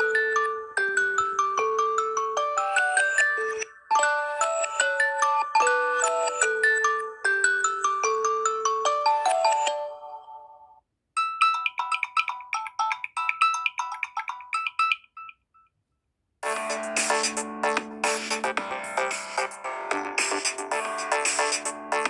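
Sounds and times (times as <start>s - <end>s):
phone ringtone melody: 0.0s - 10.6s, 16.4s - 22.0s
ringtone of quick repeated notes: 11.2s - 15.4s, 16.4s - 22.0s
busy electronic ringtone: 16.4s - 22.0s.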